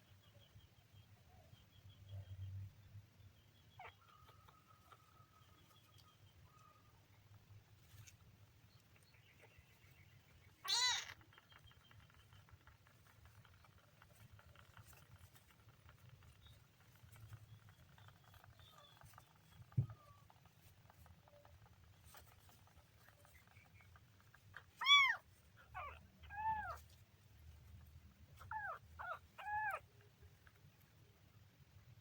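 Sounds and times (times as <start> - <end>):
kitten meowing: 10.6 - 11.2, 24.8 - 26.8.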